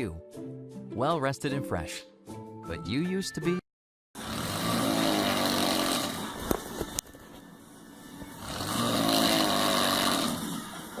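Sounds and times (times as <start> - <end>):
person snoring: 4.2 - 6.4, 8.4 - 10.9.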